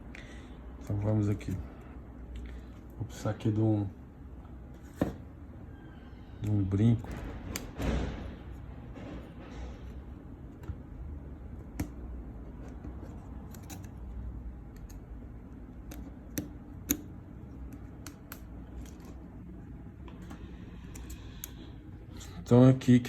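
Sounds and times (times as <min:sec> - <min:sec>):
low steady hum: 0:00.0 - 0:23.0
small sharp clicks and taps: 0:15.8 - 0:19.1.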